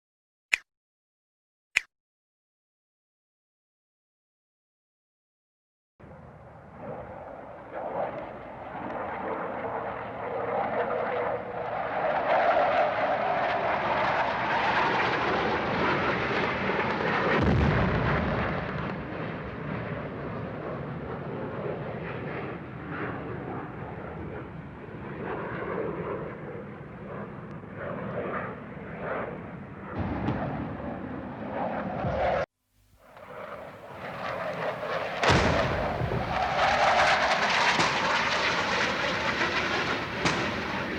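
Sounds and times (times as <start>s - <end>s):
military jet roar: 6.0s - 26.5s, 33.1s - 40.9s
heavy explosions: 34.0s - 40.9s.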